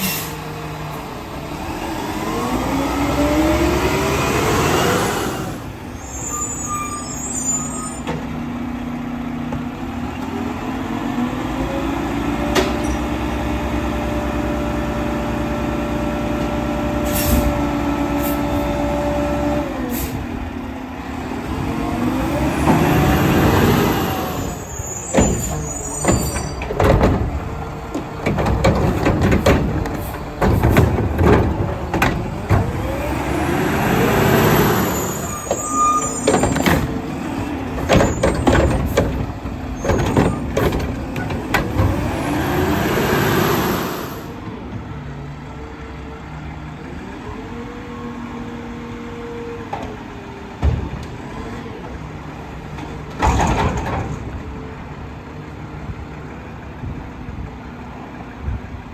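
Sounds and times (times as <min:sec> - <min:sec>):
air brakes hissing: 0:00.0 - 0:00.4, 0:05.3 - 0:08.1, 0:17.0 - 0:17.6, 0:19.8 - 0:20.4, 0:23.9 - 0:26.6
garbage truck engine revving: 0:00.0 - 0:06.0, 0:08.3 - 0:44.6
metal clanks and bangs: 0:25.1 - 0:33.1, 0:35.1 - 0:42.2, 0:52.7 - 0:54.4.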